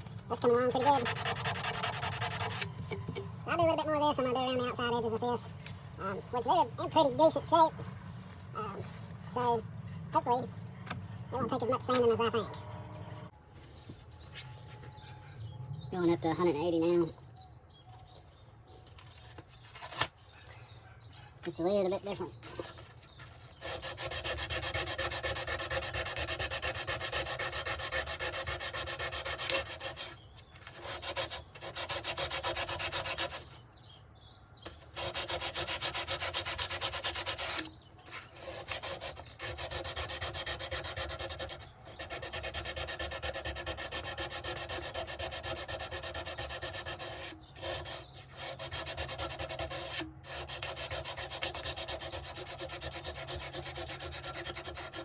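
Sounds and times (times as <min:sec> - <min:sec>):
sandpaper rubbing over a knife: 0:00.7 - 0:02.7, 0:22.1 - 0:33.6, 0:34.7 - 0:55.0.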